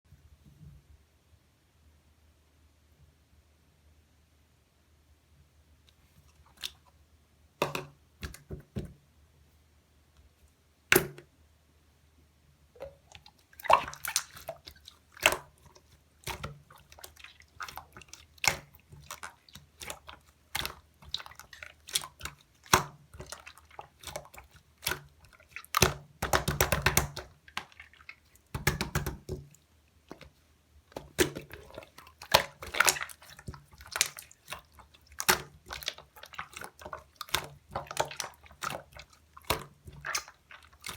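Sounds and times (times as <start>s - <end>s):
hands squishing slime: 12.8s - 40.9s.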